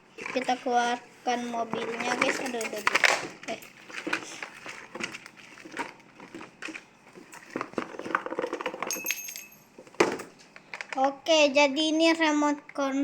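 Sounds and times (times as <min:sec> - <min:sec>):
packaging rustling and crinkling: 0:00.1 - 0:08.9.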